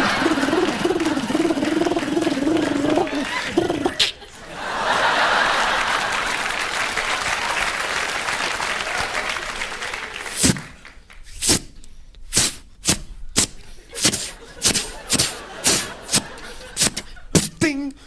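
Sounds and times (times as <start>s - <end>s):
audience laughing: 0.0s - 10.9s, 13.8s - 17.6s
audience applauding: 0.0s - 11.2s, 14.4s - 16.8s.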